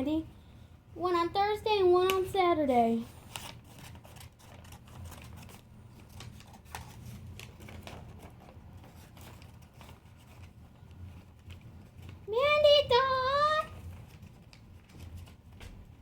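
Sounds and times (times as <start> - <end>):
low steady hum: 0.0 - 16.0
packaging rustling: 3.2 - 12.3.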